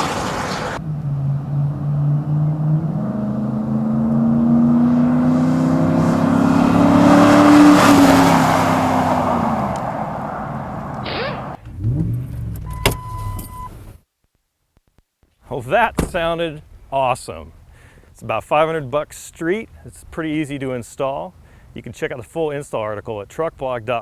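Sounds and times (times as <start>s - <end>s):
pickup truck engine accelerating: 0.0s - 14.0s
short beep: 12.6s - 13.8s
sharp knocks: 15.8s - 16.4s.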